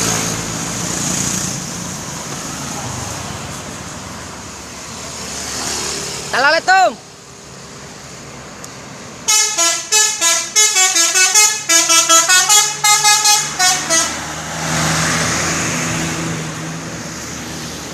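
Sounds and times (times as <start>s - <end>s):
bus engine and road noise: 0.0s - 17.9s
musical multi-tone bus horn: 9.3s - 14.4s.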